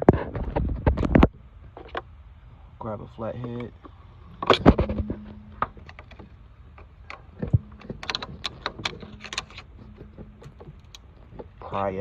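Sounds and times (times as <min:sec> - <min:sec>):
faint steady hum: 0:00.0 - 0:12.0
metal hand tools clinking: 0:07.1 - 0:11.3.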